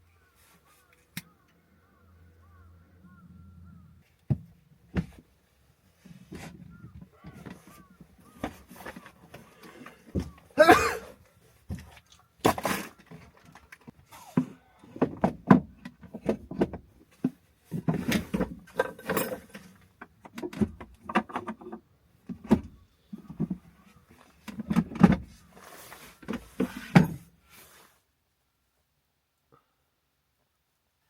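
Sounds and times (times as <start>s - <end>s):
objects knocking and clattering: 14.4s - 23.6s.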